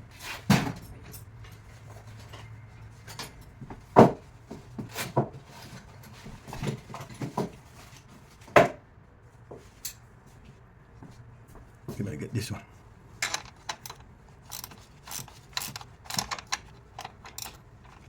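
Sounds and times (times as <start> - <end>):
wrench and metal parts clinking: 13.2 - 18.0.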